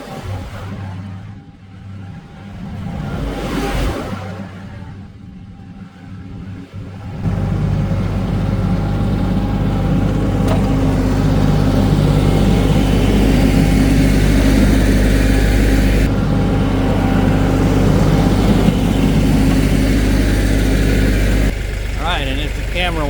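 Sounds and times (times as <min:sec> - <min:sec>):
tractor diesel engine running: 0:05.2 - 0:23.0.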